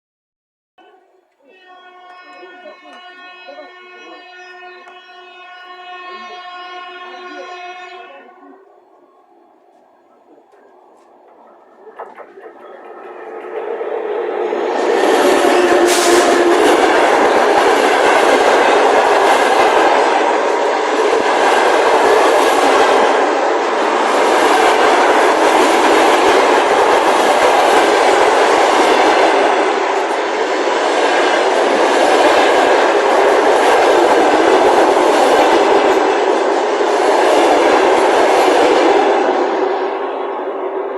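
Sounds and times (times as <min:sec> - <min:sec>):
train horn: 0:00.8 - 0:09.1, 0:12.4 - 0:24.5
train wheels rushing on rails: 0:01.9 - 0:40.9.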